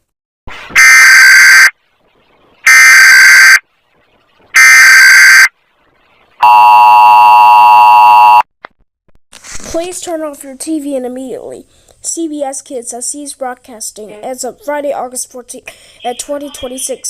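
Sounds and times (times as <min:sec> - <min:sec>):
digital data bursts: 0:00.8 - 0:06.5, 0:15.9 - 0:17.0.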